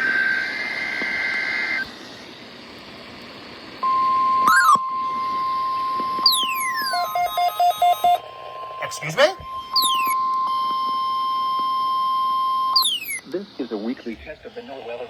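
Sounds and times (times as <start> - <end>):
electronic chirp: 3.8 - 8.2, 8.8 - 10.6, 12.4 - 13.3
steady warning alarm tone: 3.8 - 13.2
falling whistle: 9.0 - 13.2.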